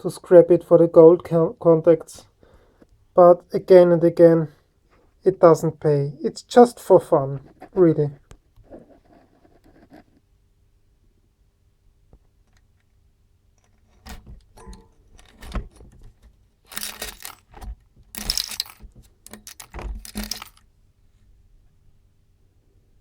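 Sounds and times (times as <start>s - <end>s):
metal parts clinking and rattling: 13.6s - 20.7s.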